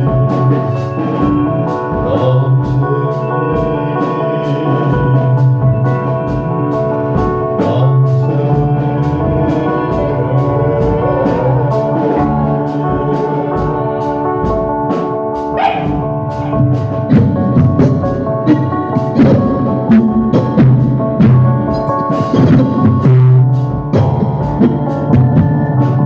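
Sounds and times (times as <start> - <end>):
sustained band chords: 0.0 - 26.0
heavy drum hits: 8.6 - 26.0.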